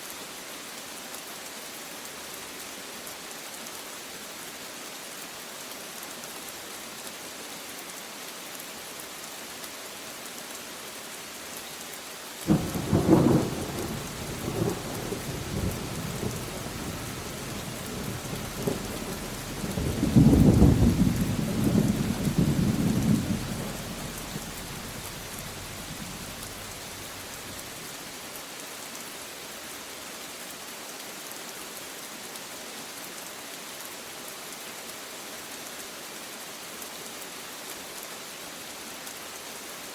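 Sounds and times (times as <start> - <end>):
rain hissing: 5.8 - 30.6
thunder clap and rumbling: 12.5 - 27.5.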